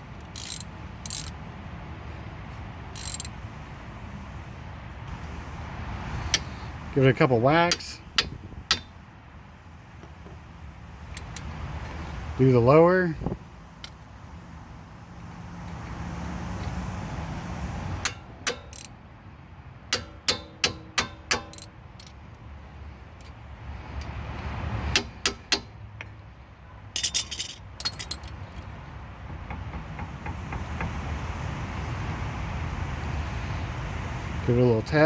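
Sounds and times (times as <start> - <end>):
metal tools clinking: 0.2 - 1.4, 3.0 - 3.4, 21.3 - 22.2, 26.9 - 28.7
ratchet clicking: 0.2 - 1.4, 3.0 - 3.4, 11.1 - 11.5, 18.0 - 18.9, 20.0 - 22.2.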